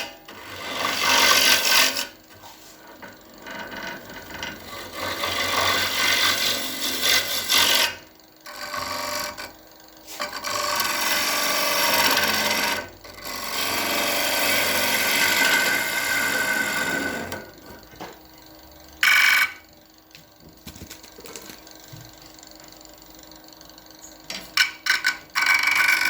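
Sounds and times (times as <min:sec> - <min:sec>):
lathe tool scraping hiss: 0:00.0 - 0:17.4.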